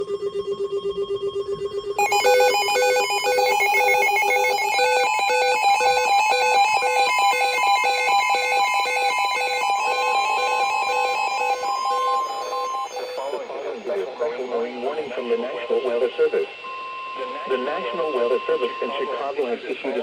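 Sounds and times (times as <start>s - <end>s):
rapid electronic alert beeps: 0.0s - 19.2s.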